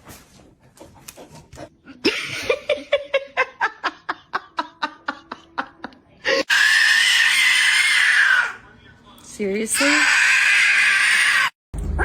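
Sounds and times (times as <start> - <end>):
person laughing: 2.0 - 6.4
loud high-pitched scream: 6.5 - 8.6, 9.8 - 11.6.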